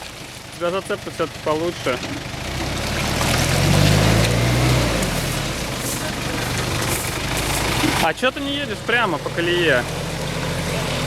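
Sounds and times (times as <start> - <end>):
vehicle engine pulling under load: 0.0 - 11.0
tyres hissing in mud: 2.5 - 8.3.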